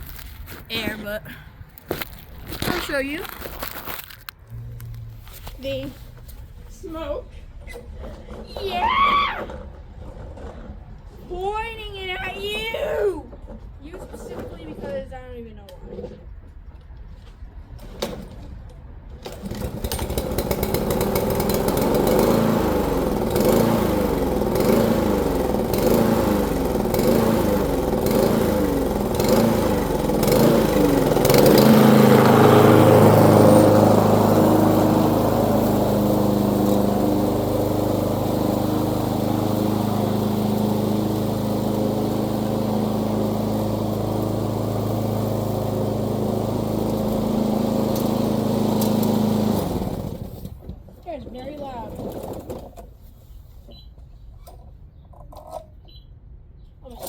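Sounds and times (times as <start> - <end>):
lawn mower engine running: 9.4 - 11.4, 19.2 - 51.0, 51.6 - 52.9.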